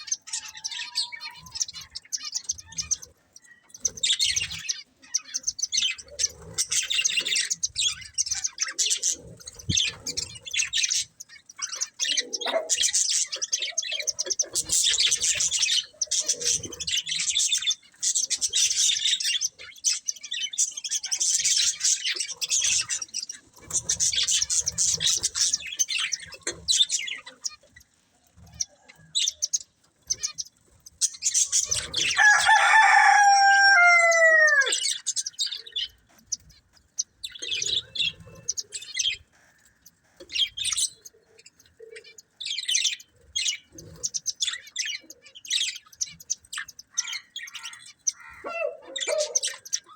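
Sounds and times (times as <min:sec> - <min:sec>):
budgerigars chirping and warbling: 0:00.0 - 0:49.9
long falling bird call: 0:31.7 - 0:35.4.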